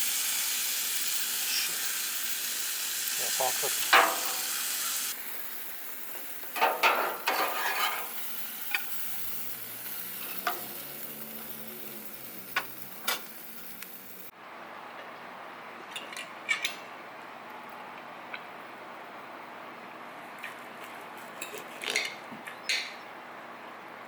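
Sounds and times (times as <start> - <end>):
food sizzling in a pan: 0.0 - 14.3
spatula scraping and clinking on pan: 6.6 - 9.0.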